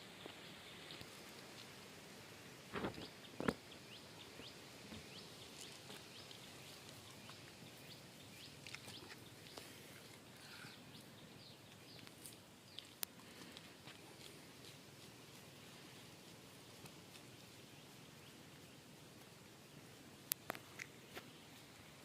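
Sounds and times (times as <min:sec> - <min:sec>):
steady hiss: 0:00.0 - 0:22.0.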